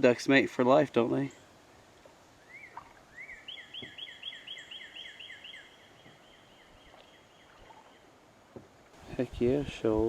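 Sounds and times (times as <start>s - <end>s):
bird calling squealing notes: 2.4s - 8.0s.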